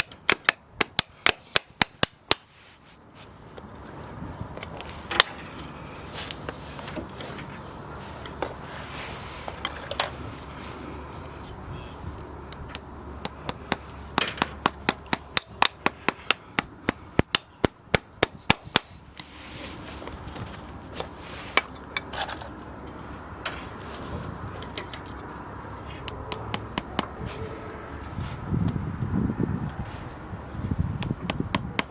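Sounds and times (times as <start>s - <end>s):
hammer striking sharp blows: 12.7s - 18.9s.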